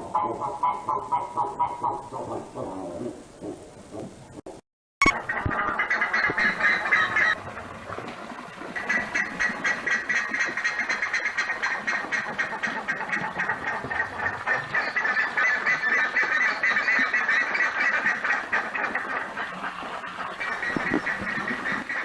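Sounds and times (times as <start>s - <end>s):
ibises calling: 5.0s - 7.4s, 8.4s - 22.0s.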